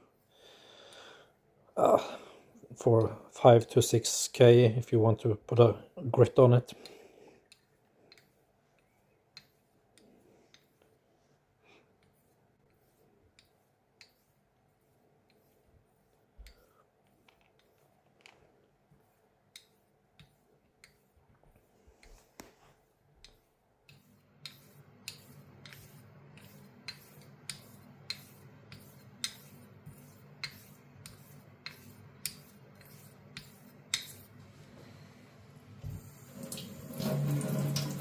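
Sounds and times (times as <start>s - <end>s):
razor ticking on whetstone: 12.0s - 14.4s, 23.2s - 34.3s.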